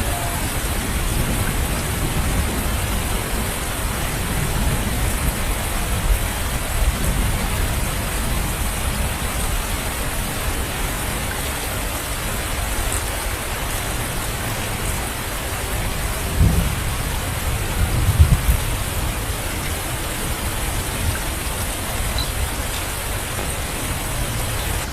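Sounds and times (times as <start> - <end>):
heavy rain pattering: 0.0 - 24.9.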